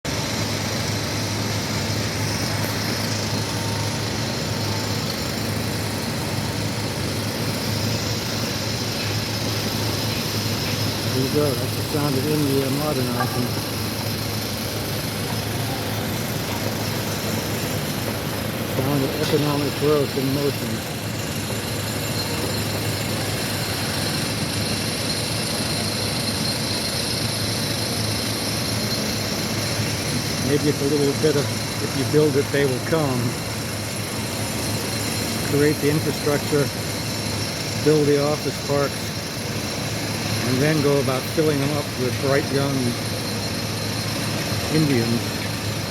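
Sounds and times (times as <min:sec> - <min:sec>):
steady mechanical noise: 0:00.0 - 0:45.9
machinery hiss: 0:00.1 - 0:45.9
machinery low hum: 0:00.1 - 0:45.9.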